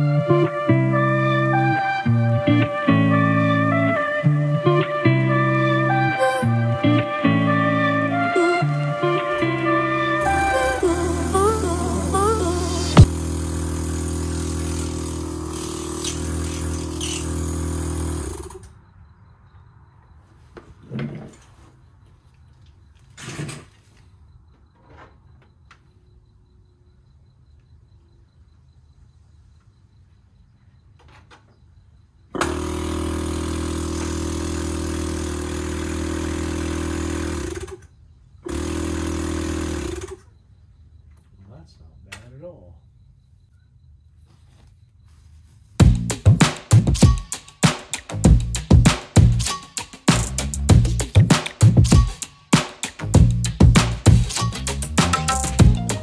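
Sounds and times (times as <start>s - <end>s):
motor humming: 8.4s - 18.6s.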